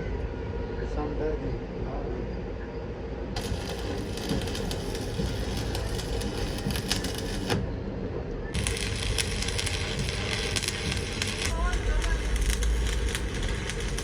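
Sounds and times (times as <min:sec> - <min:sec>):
steady low rumble: 0:00.0 - 0:14.0
arc welding crackle: 0:03.4 - 0:07.6, 0:08.5 - 0:14.0.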